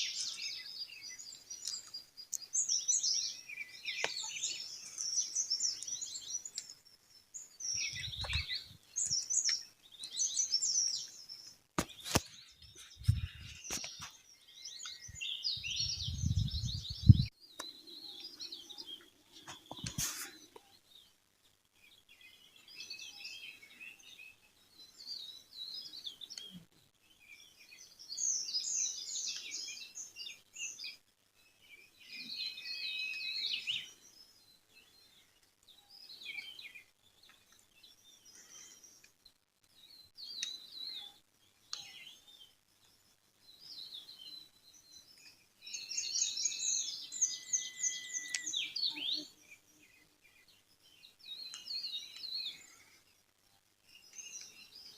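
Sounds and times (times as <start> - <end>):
songbirds chirping: 0.0 - 54.9
bird whistle: 46.2 - 49.2.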